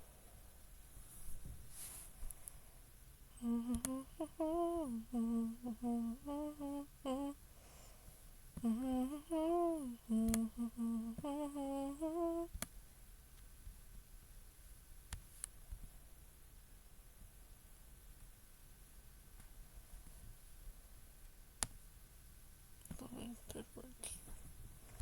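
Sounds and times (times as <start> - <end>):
woman humming a tune: 3.3 - 7.4, 8.6 - 12.6, 23.0 - 24.2.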